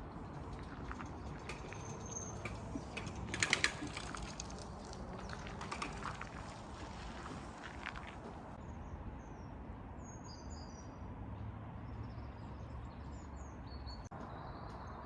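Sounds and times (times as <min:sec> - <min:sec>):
footsteps on forest path: 0:03.9 - 0:08.6.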